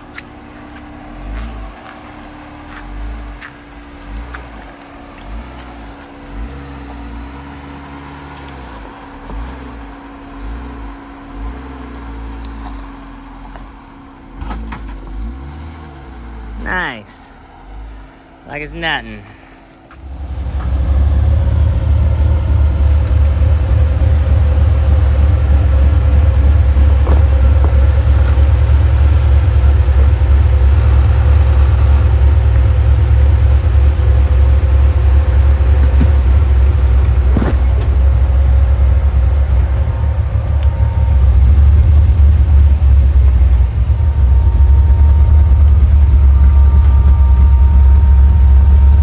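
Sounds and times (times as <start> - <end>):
engine and drivetrain rumble: 0.0 - 49.0
brief knocks of vehicle: 26.8 - 28.4, 35.8 - 38.0.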